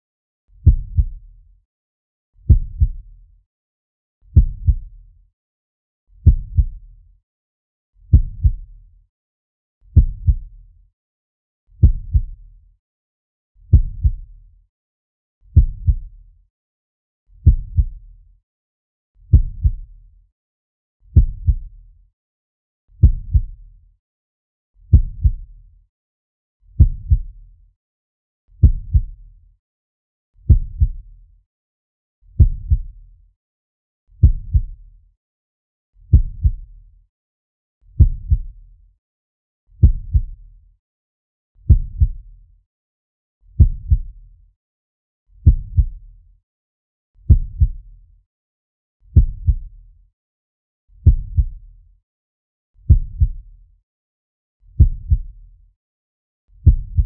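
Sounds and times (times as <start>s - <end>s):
heartbeat thuds: 0.6s - 1.2s, 2.5s - 3.0s, 4.4s - 4.9s, 6.2s - 6.8s, 8.1s - 8.6s, 10.0s - 10.4s, 11.8s - 12.4s, 13.7s - 14.2s, 15.6s - 16.1s, 17.4s - 18.0s, 19.3s - 19.8s, 21.2s - 21.7s, 23.0s - 23.6s, 24.9s - 25.4s, 26.8s - 27.3s, 28.6s - 29.2s, 30.5s - 31.0s, 32.4s - 32.9s, 34.2s - 34.8s, 36.1s - 36.6s, 38.0s - 38.5s, 39.8s - 40.4s, 41.7s - 42.1s, 43.6s - 44.1s, 45.4s - 45.9s, 47.3s - 47.7s, 49.2s - 49.6s, 51.0s - 51.5s, 52.9s - 53.3s, 54.8s - 55.3s, 56.6s - 57.0s.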